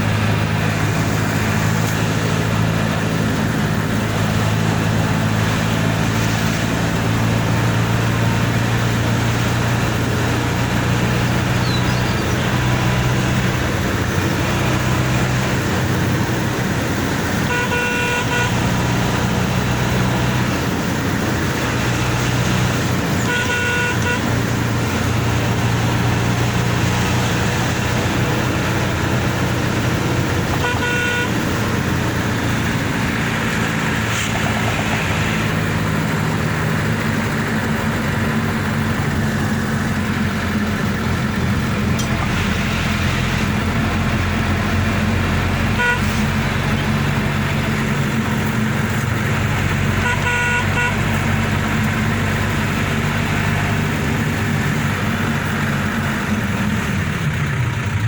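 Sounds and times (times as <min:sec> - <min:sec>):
vehicle engine running: 0:00.0 - 0:58.0
short horn toots: 0:17.4 - 0:18.8, 0:23.1 - 0:24.4, 0:30.3 - 0:31.7, 0:45.7 - 0:46.5, 0:49.9 - 0:51.3.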